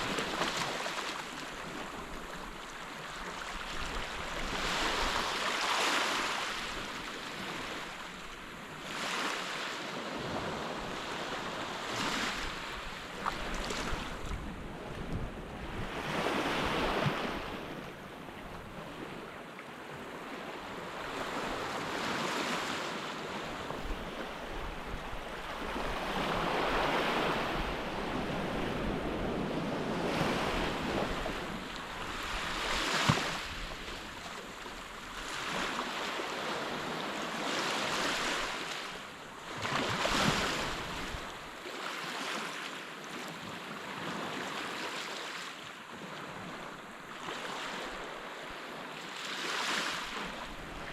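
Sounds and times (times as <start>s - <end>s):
wind rumbling on microphone: 12.1s - 19.1s, 23.5s - 35.2s.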